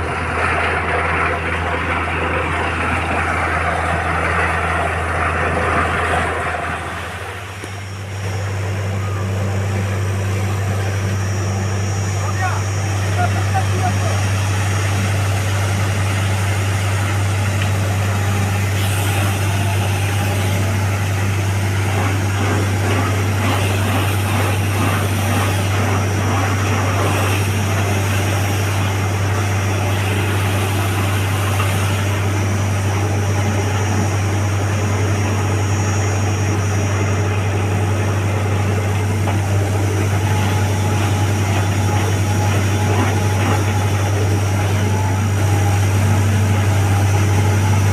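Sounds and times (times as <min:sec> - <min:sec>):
drilling rig engine humming: 0:00.0 - 0:47.9.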